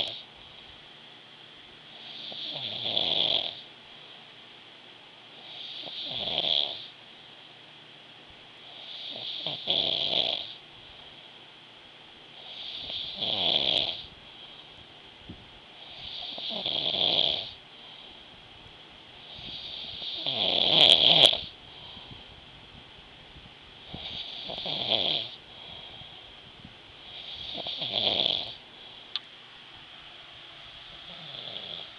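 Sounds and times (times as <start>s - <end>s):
person snoring: 0.0s - 0.3s, 2.0s - 3.7s, 5.4s - 6.9s, 8.7s - 10.6s, 12.4s - 14.1s, 15.8s - 17.6s, 19.3s - 21.5s, 23.9s - 26.1s, 27.1s - 28.6s, 31.0s - 31.9s.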